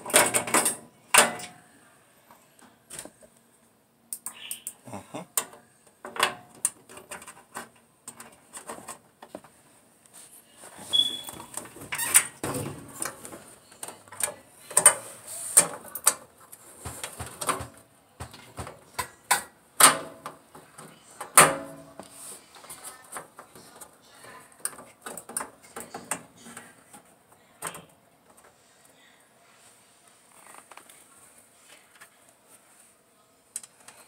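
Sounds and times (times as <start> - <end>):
parts and tools clattering: 0.0 - 1.6, 5.4 - 9.6, 11.2 - 22.0.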